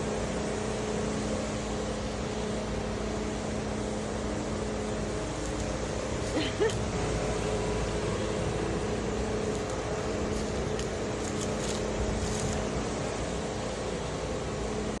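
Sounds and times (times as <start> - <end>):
machine engine hum: 0.0 - 15.0.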